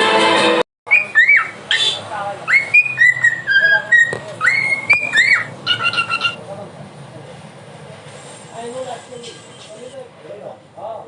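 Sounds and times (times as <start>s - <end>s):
music: 0.0s - 0.6s
swooping whistled notes: 0.9s - 6.4s.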